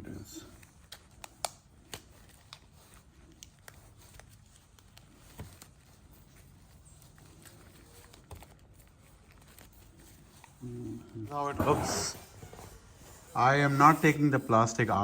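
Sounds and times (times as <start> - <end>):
hands clicking and rustling: 0.6 - 10.6.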